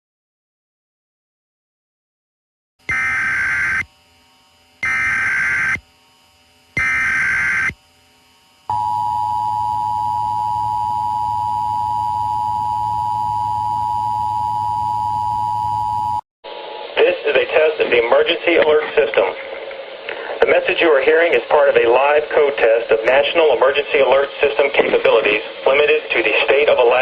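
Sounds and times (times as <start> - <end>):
data burst tones: 2.9 - 3.9, 4.8 - 5.8, 6.8 - 7.8
two-tone attention signal: 2.9 - 3.9, 6.8 - 7.8, 8.7 - 16.2.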